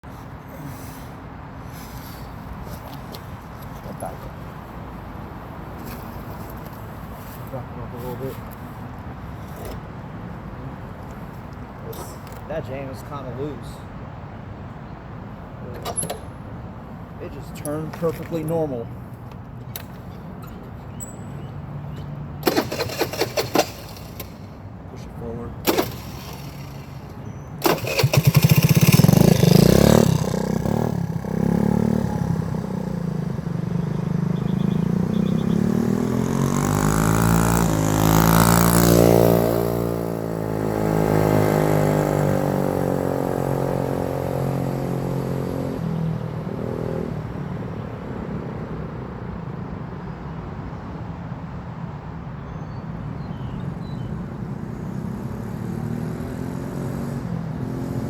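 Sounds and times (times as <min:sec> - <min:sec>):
small vehicle engine driving past: 0:25.6 - 0:47.5, 0:54.6 - 0:58.0.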